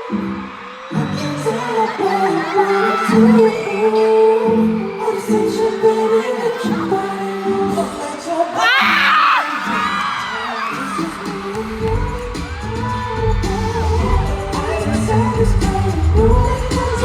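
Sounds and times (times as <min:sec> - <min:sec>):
person singing over backing track: 0:00.0 - 0:17.0
heavy bass beat: 0:11.0 - 0:17.0.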